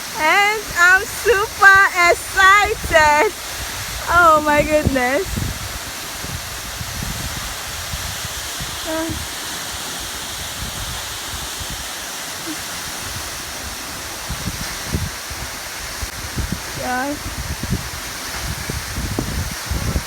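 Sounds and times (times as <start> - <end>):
waterfall rushing and splashing: 0.0 - 20.0
short voice sound: 8.9 - 9.2.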